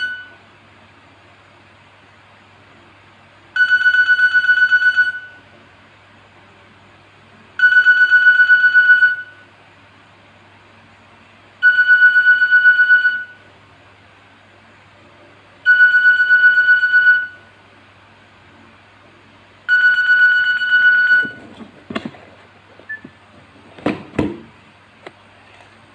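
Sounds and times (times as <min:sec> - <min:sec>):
mobile phone alarm beeping: 0:00.0 - 0:00.4, 0:03.6 - 0:05.4, 0:07.6 - 0:09.4, 0:11.6 - 0:13.4, 0:15.7 - 0:17.4, 0:19.7 - 0:21.5.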